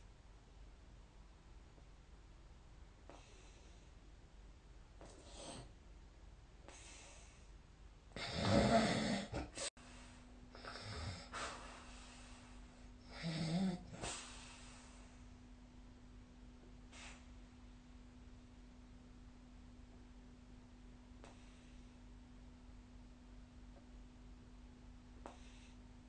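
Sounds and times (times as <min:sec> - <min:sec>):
faint steady hum: 0:00.0 - 0:26.0
soft breathing: 0:03.0 - 0:04.1, 0:06.6 - 0:15.4, 0:21.2 - 0:22.2, 0:25.2 - 0:26.0
person snoring: 0:08.2 - 0:09.7, 0:10.5 - 0:11.5, 0:13.0 - 0:14.0.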